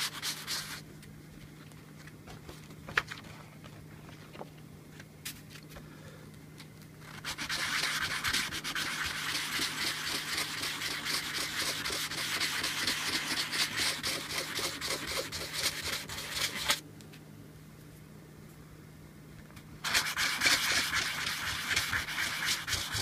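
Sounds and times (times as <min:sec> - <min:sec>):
rubbing on sandpaper: 0:00.0 - 0:00.8, 0:07.1 - 0:16.8, 0:19.8 - 0:23.0.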